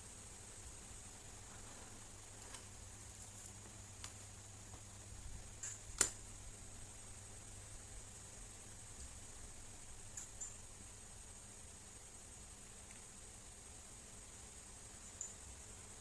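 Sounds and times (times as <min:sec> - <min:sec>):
faint steady hiss and hum: 0:00.0 - 0:16.0
small sharp clicks: 0:05.6 - 0:06.2.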